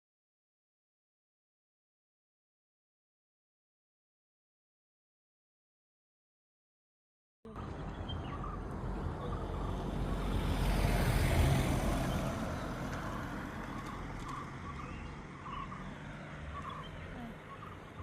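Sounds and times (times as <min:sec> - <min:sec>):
vehicle passing: 0:07.6 - 0:18.0.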